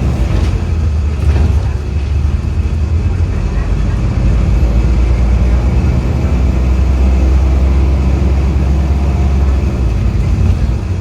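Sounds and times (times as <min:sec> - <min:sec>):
bus engine rumble: 0:00.0 - 0:11.0
road noise: 0:00.0 - 0:11.0.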